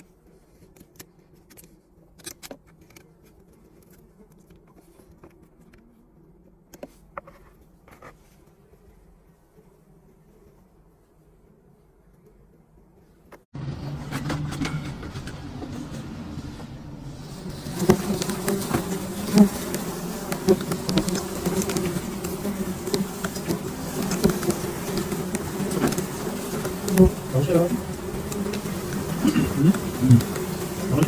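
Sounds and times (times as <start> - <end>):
bees buzzing: 15.8 - 31.0.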